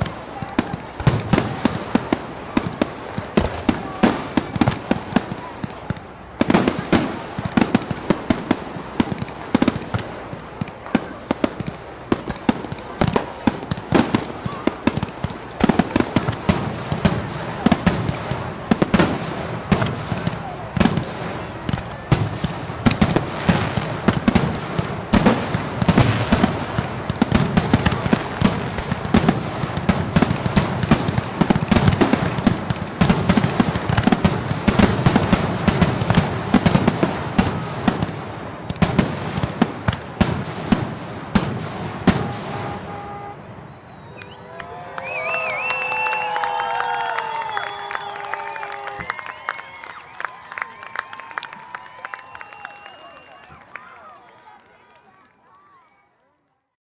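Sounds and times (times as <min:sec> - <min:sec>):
firework shells bursting: 0:00.0 - 0:44.4
firework crackling: 0:00.0 - 0:53.8.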